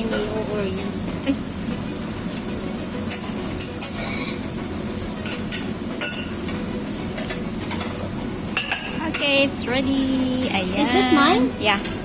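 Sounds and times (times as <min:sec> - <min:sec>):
stir-fry sizzling in a wok: 0:00.0 - 0:12.0
metal utensils scraping a pan: 0:02.4 - 0:04.6.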